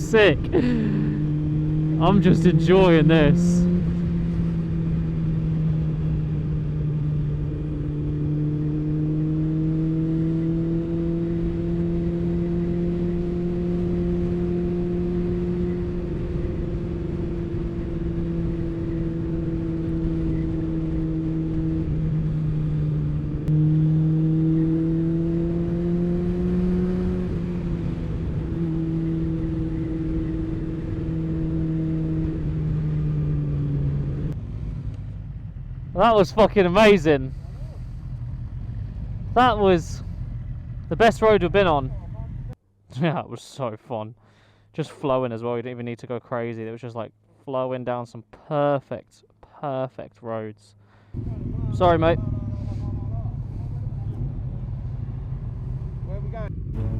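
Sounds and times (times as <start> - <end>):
motorcycle engine at road speed: 0.0 - 42.6, 50.8 - 56.9
wind and road noise: 0.0 - 42.6, 50.8 - 56.9.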